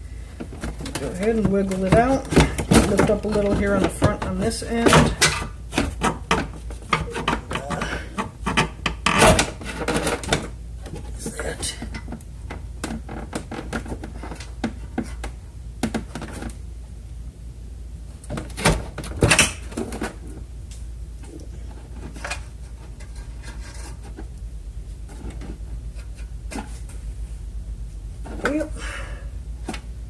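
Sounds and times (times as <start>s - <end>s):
plastic clatter: 0.4s - 11.1s.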